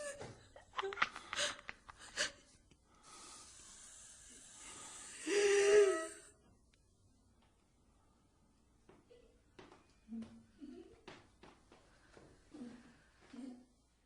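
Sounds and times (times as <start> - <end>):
person breathing and gasping: 1.1 - 6.3.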